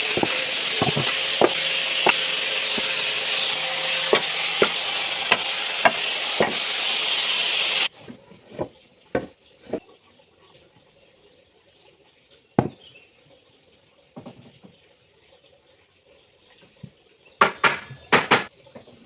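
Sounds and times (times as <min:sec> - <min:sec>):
drum sander sanding wood: 0:00.0 - 0:07.9
knocks: 0:00.2 - 0:02.2.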